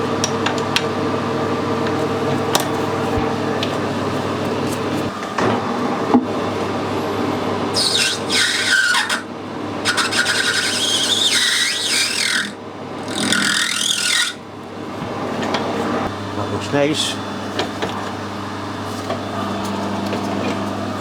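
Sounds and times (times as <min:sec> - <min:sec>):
lathe humming: 0:00.1 - 0:21.0
metal cutting squeal: 0:07.8 - 0:14.4.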